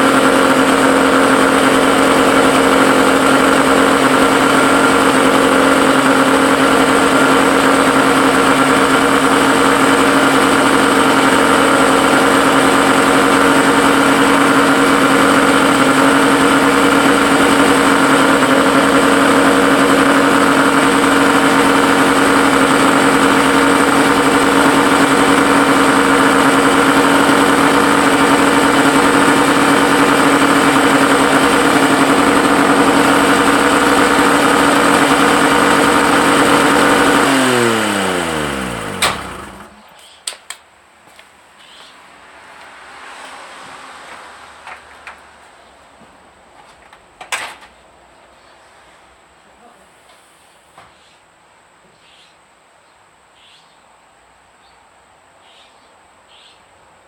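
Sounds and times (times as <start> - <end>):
two-stroke engine running: 0.0 - 39.9.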